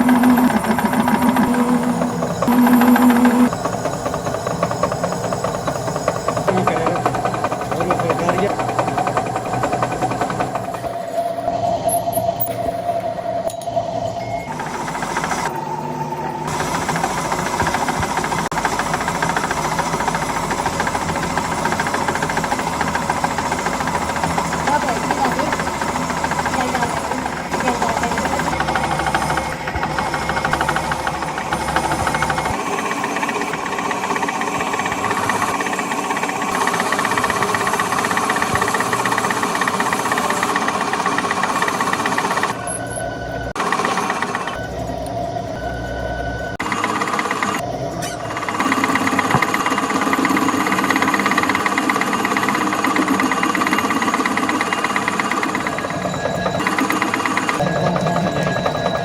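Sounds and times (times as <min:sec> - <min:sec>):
workshop machinery rattling: 0:00.0 - 0:13.7, 0:14.5 - 0:44.6, 0:46.6 - 0:59.0
steady high tone: 0:00.0 - 0:41.0, 0:55.3 - 0:59.0.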